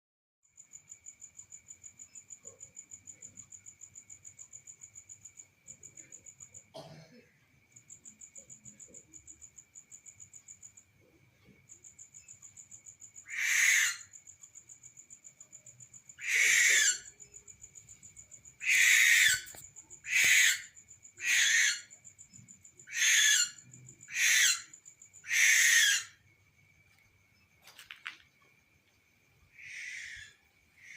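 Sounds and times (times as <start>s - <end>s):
bird hissing screeches: 13.3s - 14.0s, 16.2s - 17.1s, 18.6s - 19.5s, 20.1s - 21.9s, 22.9s - 24.7s, 25.3s - 26.1s, 29.6s - 30.9s.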